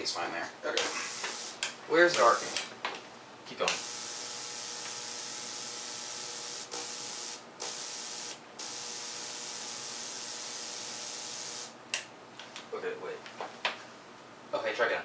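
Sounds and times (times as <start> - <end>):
tesla coil hissing buzz: 0.8 - 2.7, 3.7 - 11.8.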